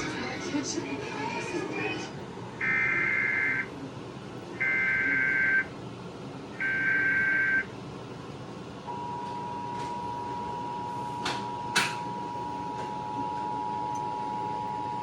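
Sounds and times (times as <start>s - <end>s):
two-tone attention signal: 2.6s - 3.7s, 4.6s - 5.7s, 6.6s - 7.7s
buzzing data bursts: 4.6s - 5.7s, 6.6s - 7.7s.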